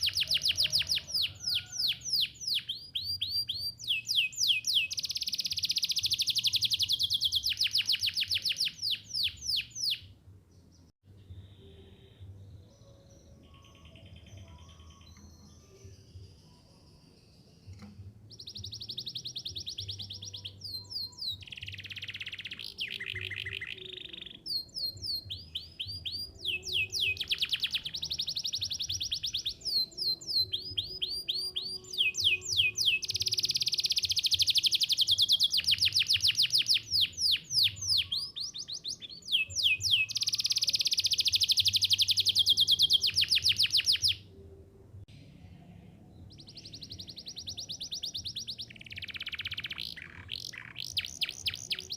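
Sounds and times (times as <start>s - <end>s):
canary singing chirps and trills: 0.0s - 44.5s, 45.8s - 51.9s.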